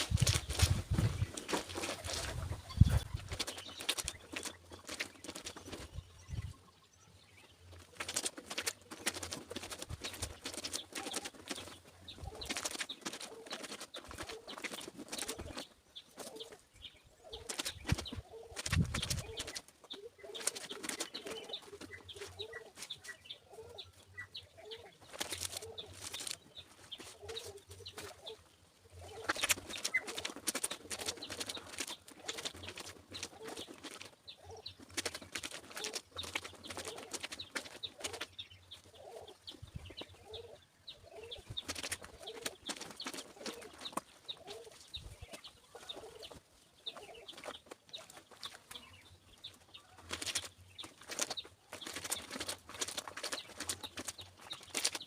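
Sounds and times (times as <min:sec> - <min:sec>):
birds calling: 0:00.0 - 0:55.0
splashing and scrubbing wet fabric: 0:07.8 - 0:15.7, 0:29.0 - 0:38.3, 0:49.9 - 0:55.0.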